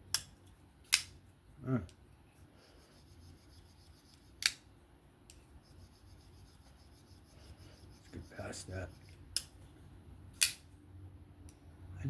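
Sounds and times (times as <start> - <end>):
knife blade snapping open: 10.4 - 10.6.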